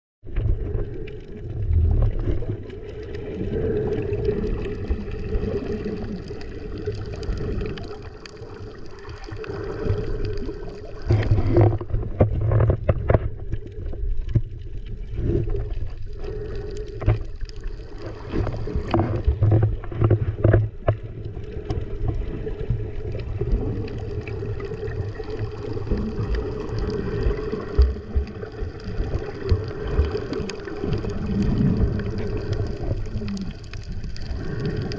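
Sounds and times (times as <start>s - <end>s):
underwater water sloshing: 0.2s - 34.9s
low rumble: 0.3s - 5.5s.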